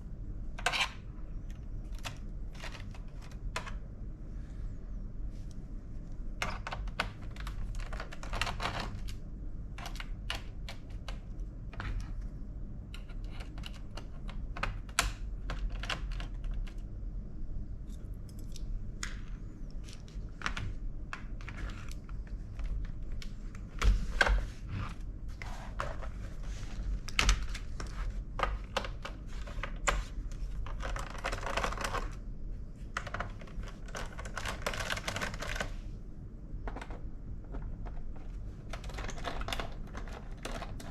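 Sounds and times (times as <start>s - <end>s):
plastic laptop parts clicking: 6.4s - 9.2s, 9.8s - 12.2s, 13.0s - 16.8s, 27.0s - 32.2s, 33.0s - 35.8s.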